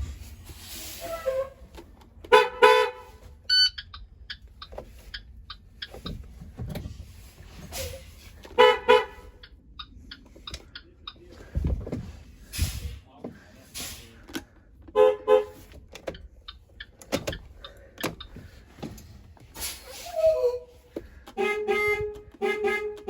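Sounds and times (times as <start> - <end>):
bus horn honking: 0.8 - 3.8, 7.8 - 9.5, 14.9 - 15.7, 19.7 - 23.0.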